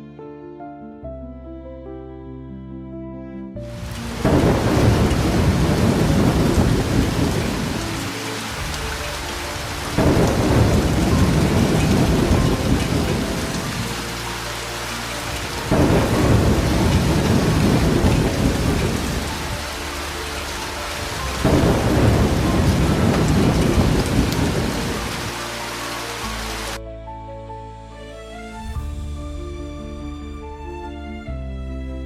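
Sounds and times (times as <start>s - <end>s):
heavy rain: 3.7s - 26.8s
thunder rolling: 3.8s - 26.8s.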